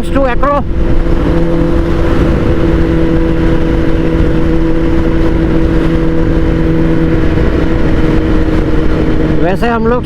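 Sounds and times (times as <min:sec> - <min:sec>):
motorcycle engine at steady speed: 0:00.0 - 0:10.0
wind and road noise: 0:00.0 - 0:10.0.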